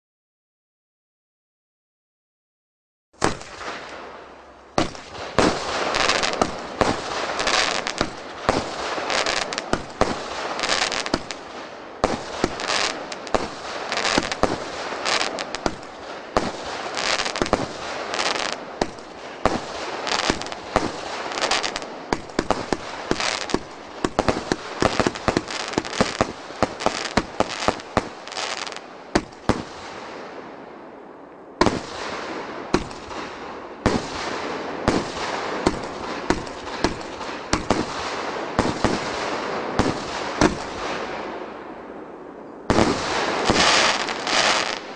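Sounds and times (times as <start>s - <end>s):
firework aerial bursts: 4.8s - 30.1s, 42.7s - 44.9s.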